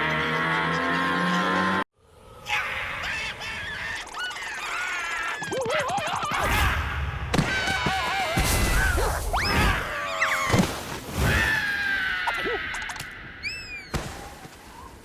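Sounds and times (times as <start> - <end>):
squeaky cartoon character voices: 2.8 - 6.6.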